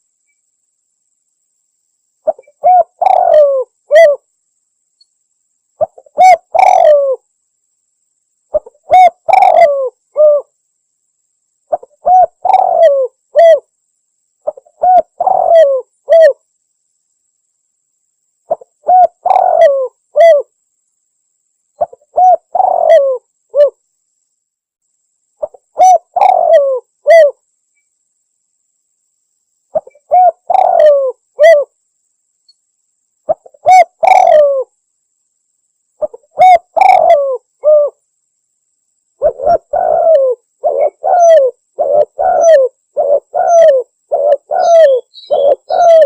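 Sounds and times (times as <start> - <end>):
dove cooing: 2.2 - 4.2, 5.8 - 7.2, 8.5 - 10.5, 11.7 - 13.7, 14.4 - 16.4, 18.5 - 20.5, 21.8 - 23.8, 25.4 - 27.4, 29.7 - 31.7, 33.3 - 34.7, 36.0 - 38.0, 39.2 - 46.0.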